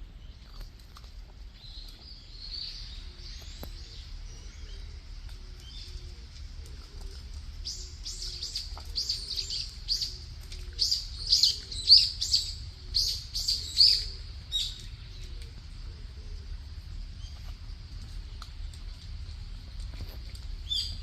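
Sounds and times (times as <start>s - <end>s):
bird chirping: 7.6s - 15.4s, 20.6s - 21.0s.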